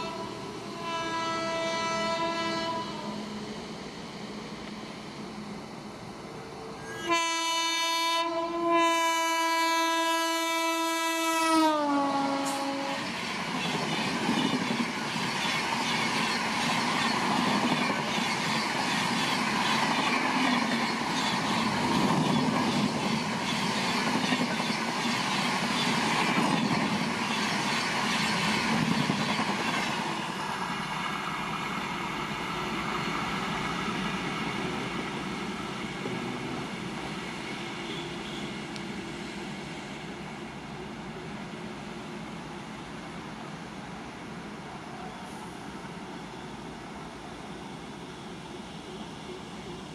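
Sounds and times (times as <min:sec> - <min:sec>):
train horn: 0:00.0 - 0:03.2, 0:06.8 - 0:13.1, 0:37.8 - 0:38.6
train coaches rushing and clattering: 0:09.7 - 0:49.9.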